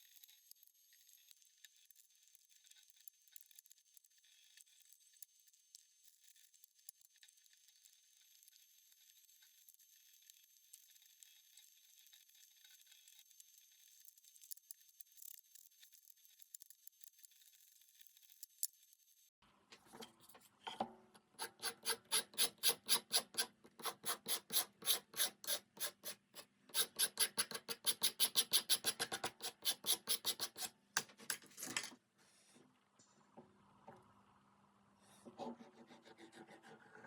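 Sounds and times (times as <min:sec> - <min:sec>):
wood being sanded by hand: 0:21.4 - 0:30.7.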